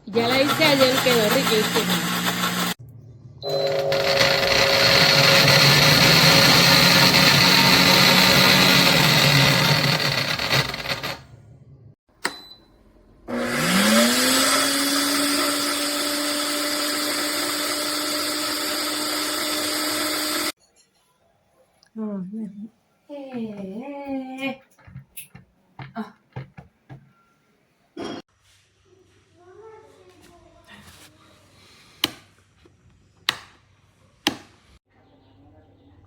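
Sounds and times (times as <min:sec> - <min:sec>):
blender running with whine: 0:00.0 - 0:02.8, 0:03.5 - 0:11.2, 0:13.3 - 0:20.6.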